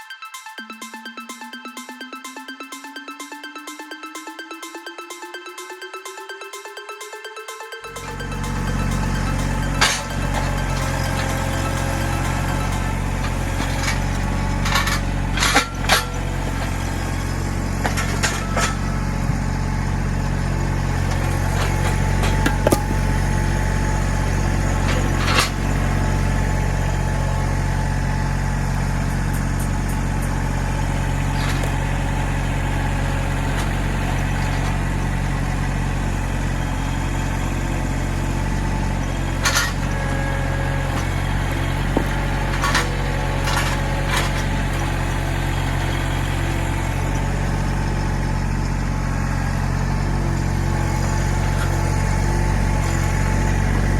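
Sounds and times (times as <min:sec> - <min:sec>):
tractor diesel engine running: 0:07.9 - 0:53.9
sharp metal knocks and clanks: 0:22.2 - 0:23.3, 0:41.8 - 0:44.4.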